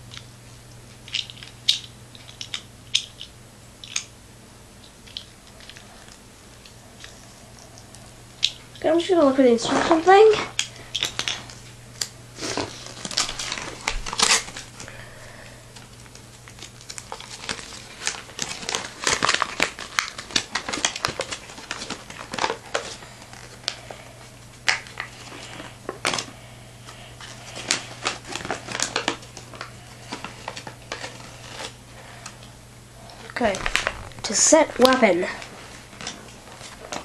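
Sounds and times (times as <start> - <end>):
steady low hum: 0.0 - 37.0
paper crinkling and rustling: 12.4 - 15.1, 15.7 - 24.0, 24.7 - 32.4, 33.4 - 37.0.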